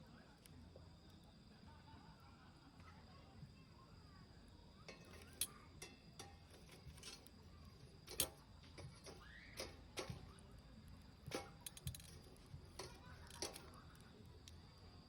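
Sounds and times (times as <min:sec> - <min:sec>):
light clicks and knocks: 0:08.0 - 0:14.6.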